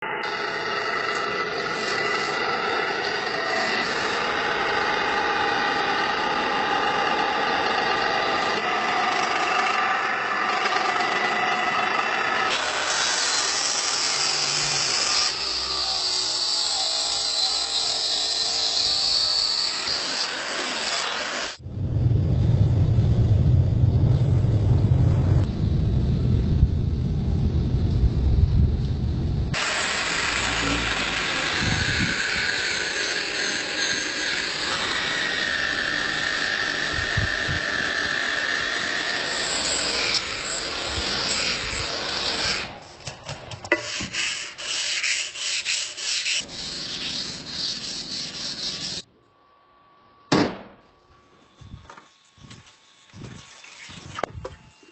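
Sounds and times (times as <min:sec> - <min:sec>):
low rumble: 0:21.6 - 0:29.6
short scraping strokes: 0:43.7 - 0:49.0
sanding on knife steel: 0:43.7 - 0:49.1, 0:52.0 - 0:54.2.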